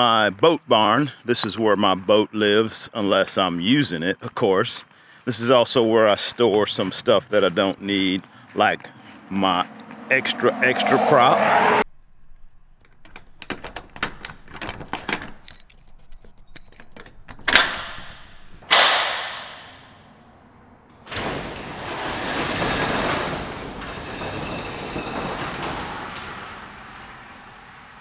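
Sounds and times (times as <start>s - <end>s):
metal door rolling on track: 9.1s - 11.9s, 16.9s - 28.0s
loud metallic bangs: 18.6s - 28.0s.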